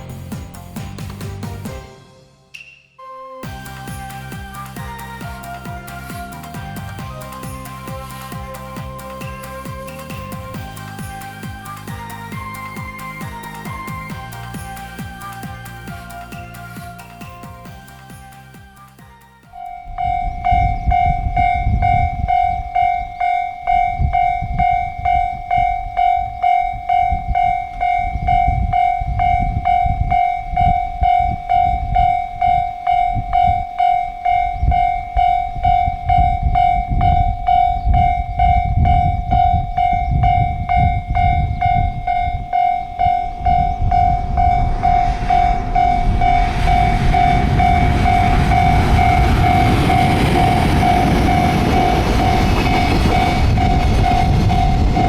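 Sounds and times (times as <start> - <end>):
passing train rumble: 0.0 - 2.4, 3.4 - 55.0
level crossing warning bell: 19.5 - 55.0.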